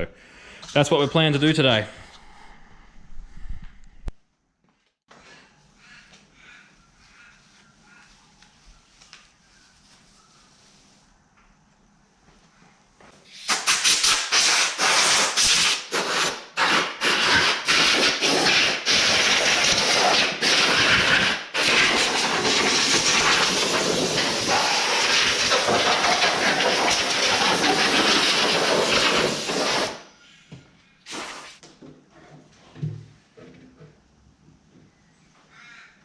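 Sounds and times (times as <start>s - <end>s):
loud hissing: 13.3s - 30.1s, 31.1s - 31.6s.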